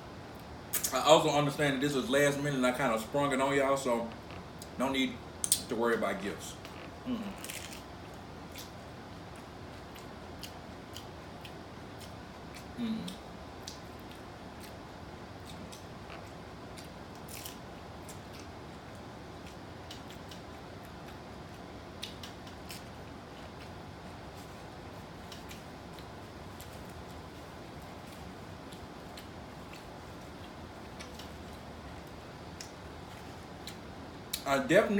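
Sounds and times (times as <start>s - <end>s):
background hiss: 0.0s - 9.7s
person chewing crunchy food: 7.3s - 34.4s.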